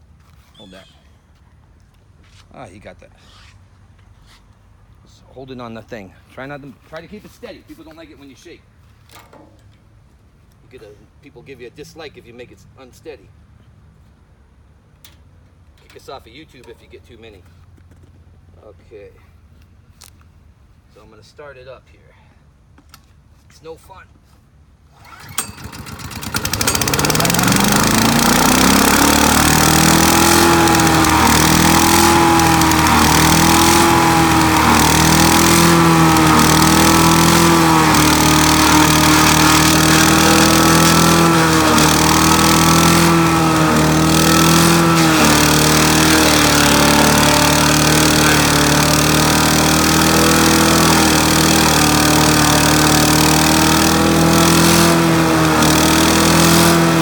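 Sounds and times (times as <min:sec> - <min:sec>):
wood chipper engine starting: 0:24.9 - 0:57.0.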